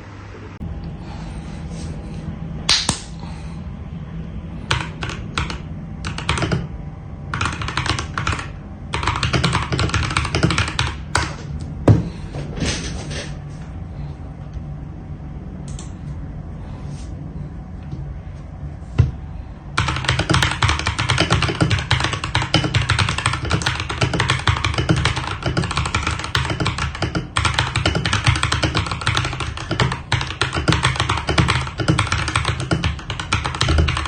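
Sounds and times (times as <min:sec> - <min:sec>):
mechanical keyboard typing: 0:04.7 - 0:06.7, 0:07.3 - 0:11.3, 0:19.8 - 0:34.0.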